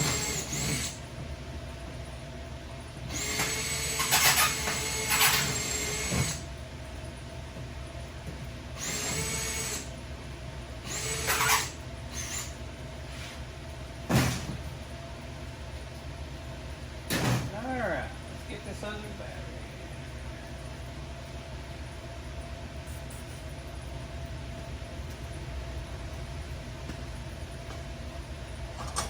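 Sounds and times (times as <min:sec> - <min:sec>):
power drill running: 0:00.0 - 0:01.0, 0:03.1 - 0:06.4, 0:08.8 - 0:09.9, 0:10.8 - 0:12.6.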